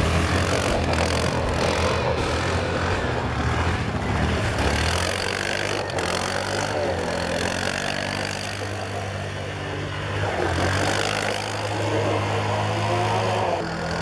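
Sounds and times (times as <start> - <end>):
quad bike engine running: 0.0 - 14.0.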